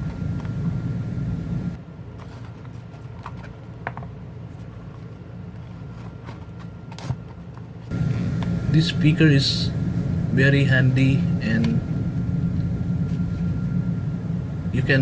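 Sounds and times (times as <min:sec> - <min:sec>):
low background rumble: 0:00.0 - 0:01.8, 0:07.9 - 0:15.0.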